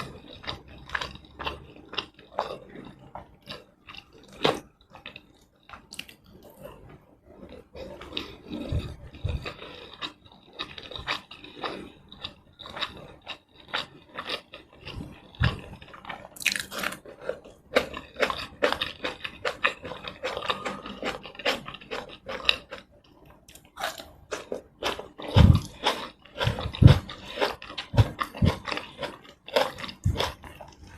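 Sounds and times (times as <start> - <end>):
chewing with wet mouth clicks: 0.0 - 6.6.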